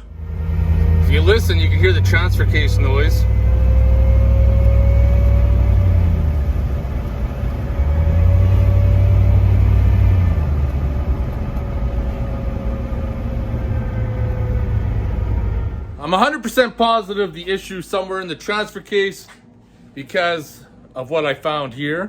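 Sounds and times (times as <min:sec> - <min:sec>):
vehicle drivetrain and road rumble: 0:00.0 - 0:16.1
drivetrain whine: 0:00.0 - 0:16.8.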